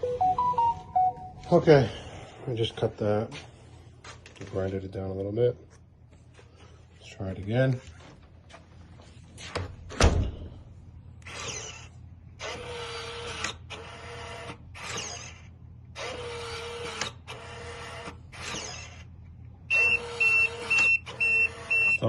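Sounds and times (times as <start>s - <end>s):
keypad high beeps: 0.0s - 1.4s, 19.7s - 22.0s
deadbolt motor whirring: 11.2s - 19.1s, 19.7s - 22.0s.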